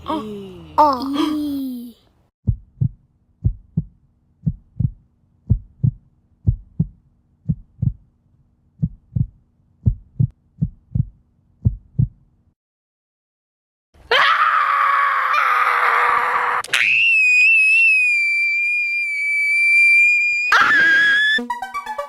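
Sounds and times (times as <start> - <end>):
heartbeat thumps: 2.4 - 8.1, 8.8 - 12.2.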